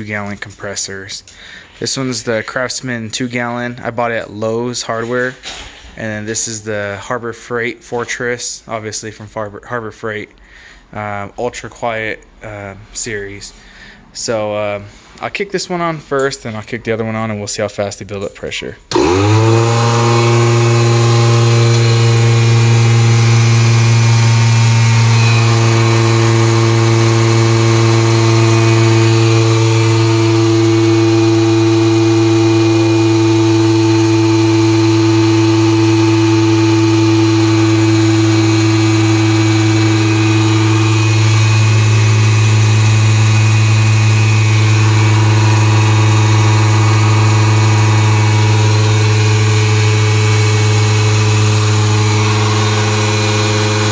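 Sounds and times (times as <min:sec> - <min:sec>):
air compressors droning: 0:18.9 - 0:53.9.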